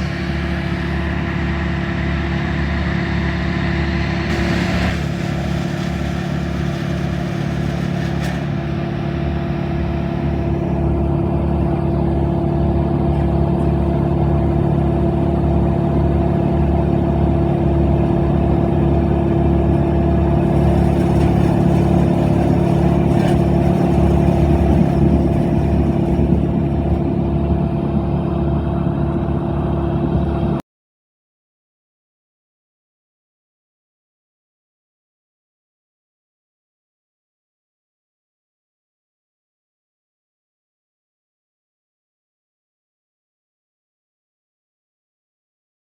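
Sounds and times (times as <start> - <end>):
large engine humming: 0.0 - 30.6.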